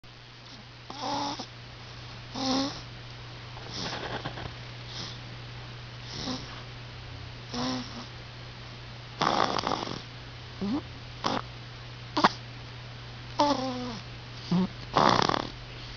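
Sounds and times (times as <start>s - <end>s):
steady low hum: 0.0s - 15.9s
baby snoring: 0.9s - 1.5s, 2.3s - 2.9s, 6.1s - 6.5s, 7.5s - 8.1s, 9.2s - 11.4s, 12.2s - 12.4s, 13.4s - 15.6s.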